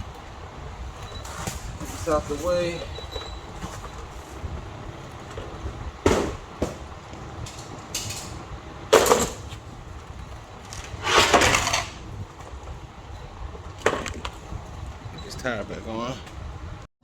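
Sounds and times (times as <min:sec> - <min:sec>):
rattling clatter: 0:05.2 - 0:09.6, 0:10.6 - 0:12.5
tools and car parts clanking: 0:05.2 - 0:09.6, 0:10.6 - 0:12.6, 0:13.6 - 0:14.4.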